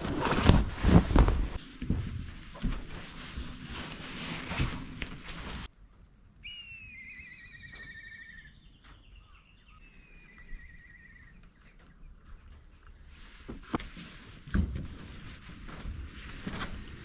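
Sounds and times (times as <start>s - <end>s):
bird whistled call and trill: 6.4s - 12.1s.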